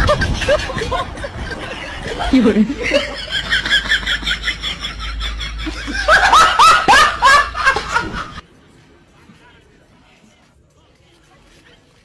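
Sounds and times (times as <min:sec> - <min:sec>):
high-pitched laughter: 0:00.0 - 0:08.4.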